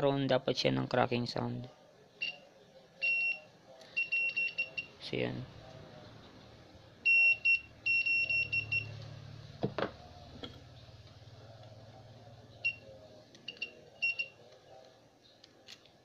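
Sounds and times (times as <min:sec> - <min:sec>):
continuity tester buzzer beeping: 0:07.0 - 0:09.2, 0:13.5 - 0:14.4.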